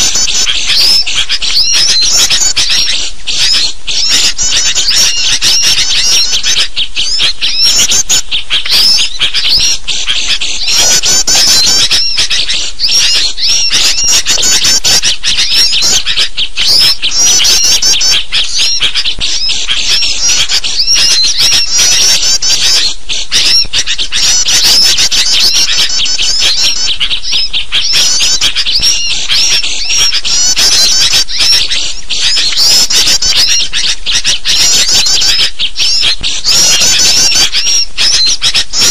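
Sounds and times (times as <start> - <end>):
birds chirping and scolding: 0.0 - 38.9.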